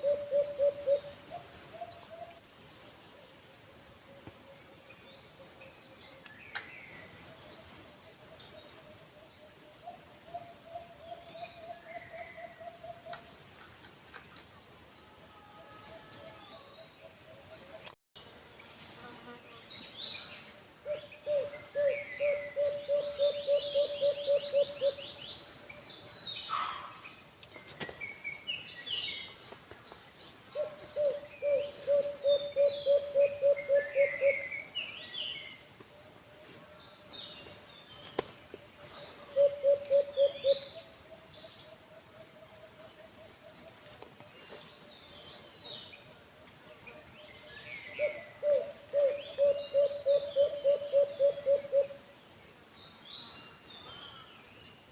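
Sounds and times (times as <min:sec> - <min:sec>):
dove cooing: 0:00.0 - 0:01.0, 0:20.8 - 0:25.0, 0:30.6 - 0:34.5, 0:39.4 - 0:40.6, 0:48.0 - 0:52.0.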